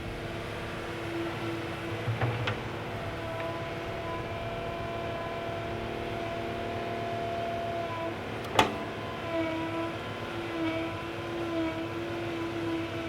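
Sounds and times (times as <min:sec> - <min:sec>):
small electric motors whining: 0:08.5 - 0:13.0.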